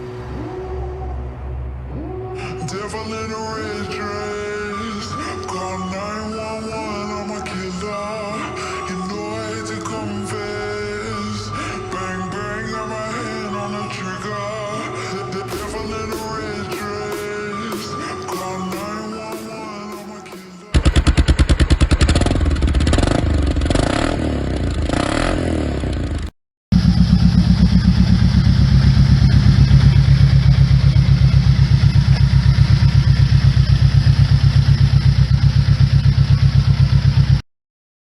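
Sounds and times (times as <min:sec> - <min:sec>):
motorcycle engine idling and revving: 0:20.8 - 0:37.4.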